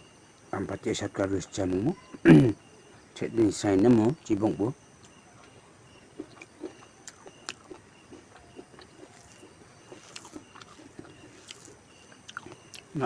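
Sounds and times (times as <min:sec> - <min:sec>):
person chewing food: 0:06.1 - 0:13.0.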